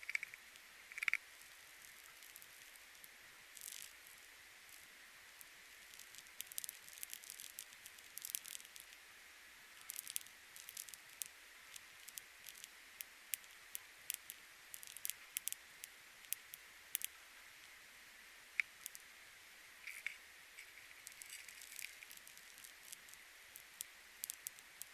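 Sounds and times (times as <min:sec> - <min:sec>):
clicking and crackling: 0:00.0 - 0:01.2, 0:05.9 - 0:09.0, 0:09.8 - 0:17.2, 0:19.8 - 0:24.9
low steady hiss: 0:00.0 - 0:24.9.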